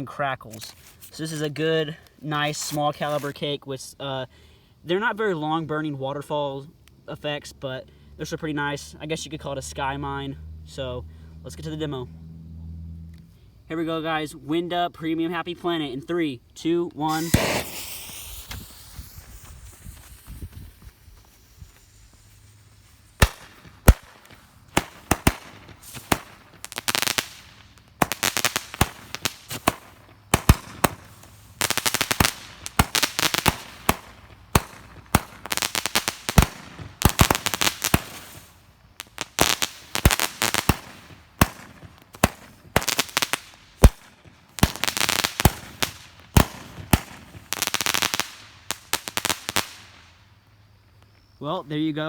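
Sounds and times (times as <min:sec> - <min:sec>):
firework crackling: 0:02.3 - 0:03.4, 0:17.0 - 0:50.4
firework shots and bursts: 0:17.1 - 0:50.2.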